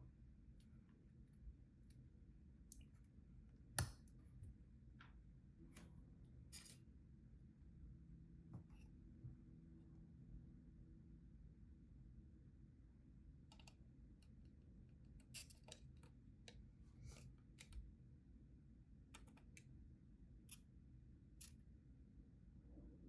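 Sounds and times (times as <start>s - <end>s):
low room hum: 0.0s - 23.0s.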